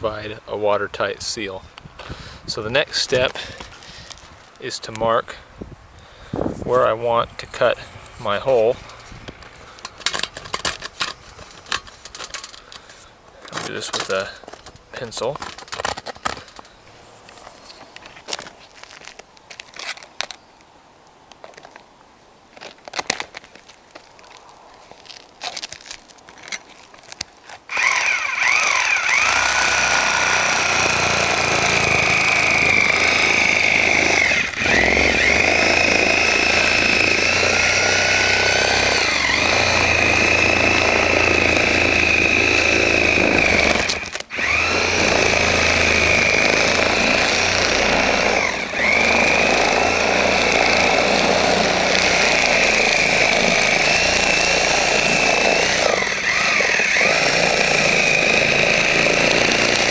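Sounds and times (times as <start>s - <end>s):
power saw cutting shingles: 13.4s - 16.7s, 27.7s - 59.9s.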